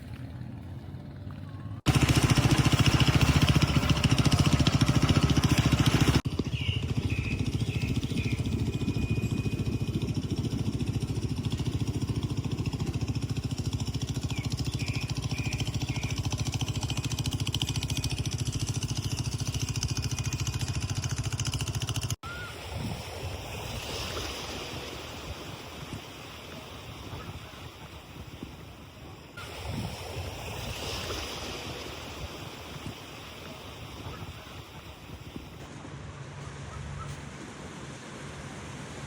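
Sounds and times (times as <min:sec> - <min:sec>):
motor running: 0:01.9 - 0:22.2
wind on microphone: 0:22.2 - 0:35.7
sea waves: 0:22.2 - 0:39.0.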